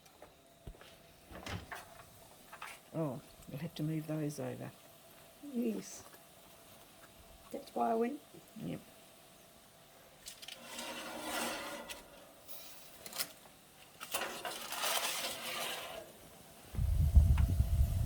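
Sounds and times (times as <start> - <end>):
metal pans scraping and rattling: 10.4 - 12.3, 14.0 - 16.2
loud low rumble: 16.8 - 18.0.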